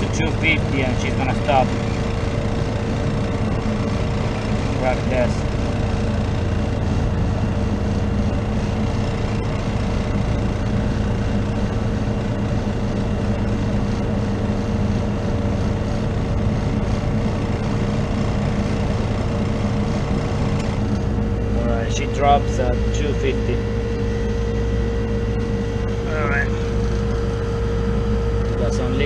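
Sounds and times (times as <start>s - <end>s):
compressor humming: 0.0s - 29.0s
unbalanced condenser fan: 0.0s - 29.0s.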